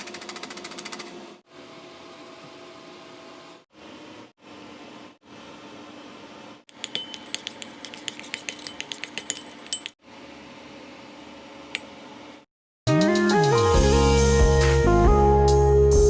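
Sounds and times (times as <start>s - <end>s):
metal utensil clinking on dish: 6.7s - 10.0s.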